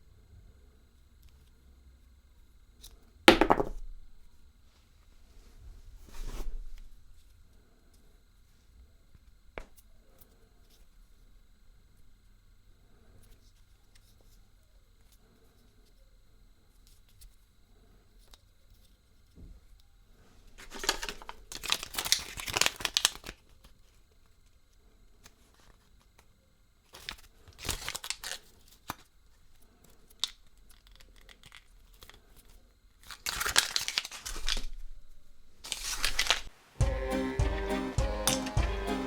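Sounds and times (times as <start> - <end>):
wrapper crinkling and tearing: 20.6 - 24.0, 26.9 - 29.1, 33.0 - 35.0, 35.6 - 36.5.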